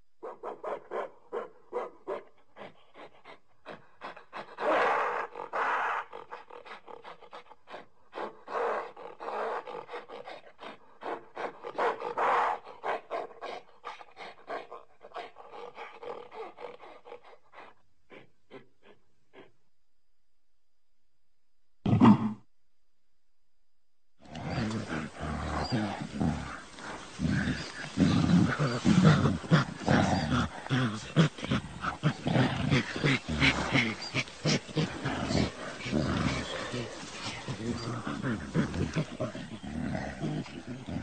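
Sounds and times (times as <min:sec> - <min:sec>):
primate breathy pulses: 0:00.2 - 0:19.7, 0:24.2 - 0:41.0
primate cries: 0:24.3 - 0:39.6.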